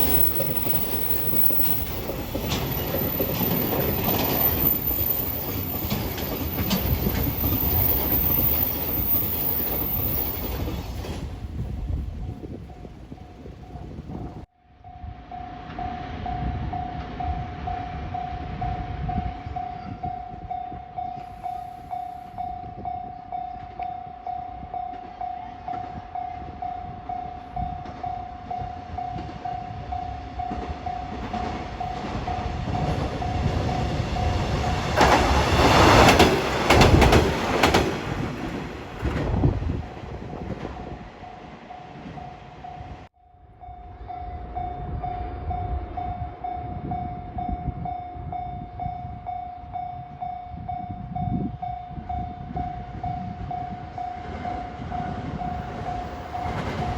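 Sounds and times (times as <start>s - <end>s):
train wheels clacking on rail joints: 0.0s - 11.7s, 30.4s - 41.0s
diesel railcar passing: 0.0s - 56.9s.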